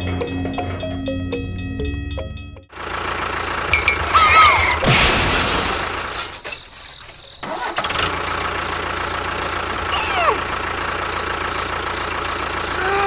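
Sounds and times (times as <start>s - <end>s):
small engine running: 2.7s - 4.8s, 7.4s - 13.0s.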